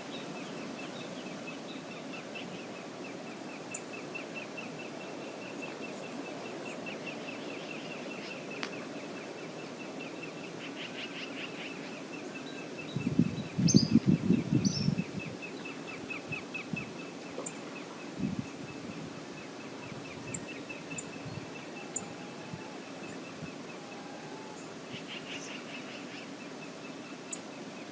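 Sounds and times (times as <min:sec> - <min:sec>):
higher bird calls: 0:03.5 - 0:26.4
river water rushing: 0:15.3 - 0:27.9.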